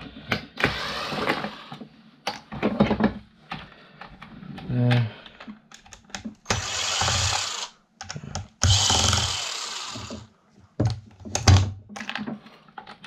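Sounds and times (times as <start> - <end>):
power drill running: 0.6 - 1.8, 6.5 - 7.7, 8.6 - 10.3.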